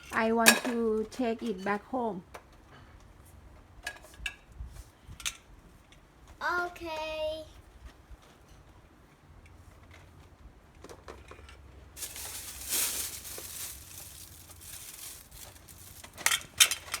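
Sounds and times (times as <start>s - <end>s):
bag crinkling and rustling: 12.0s - 17.0s.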